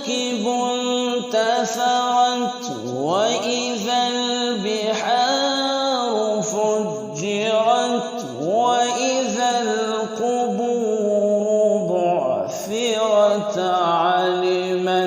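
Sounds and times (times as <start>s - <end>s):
man chanting: 0.0s - 15.0s.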